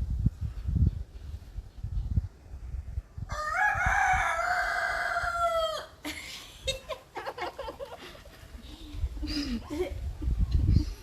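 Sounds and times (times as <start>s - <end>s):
rooster crowing: 3.3s - 6.0s.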